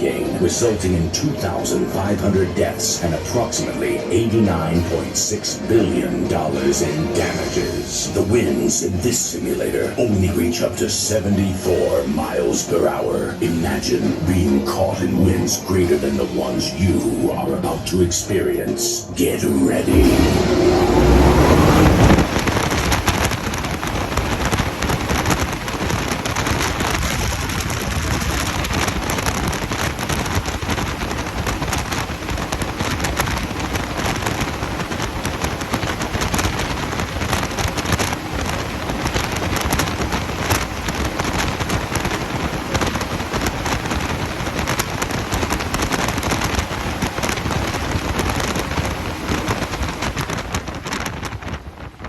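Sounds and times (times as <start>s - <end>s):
rush of wind: 19.5s - 52.0s
wind buffeting microphone: 19.9s - 52.0s.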